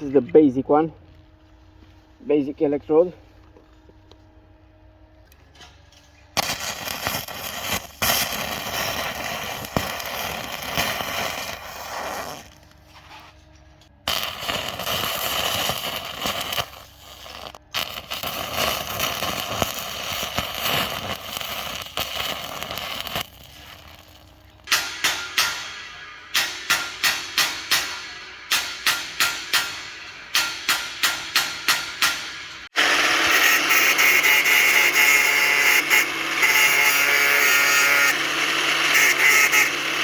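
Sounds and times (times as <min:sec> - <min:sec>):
arc welding crackle: 0:06.3 - 0:13.2, 0:14.0 - 0:40.0.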